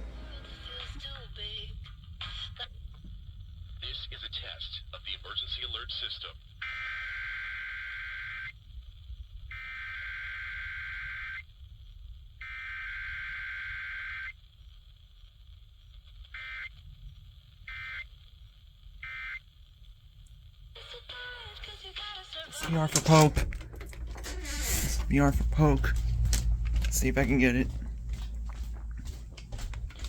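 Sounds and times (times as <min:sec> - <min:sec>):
buzzy warbling data tones: 0:09.5 - 0:11.4, 0:12.4 - 0:14.4.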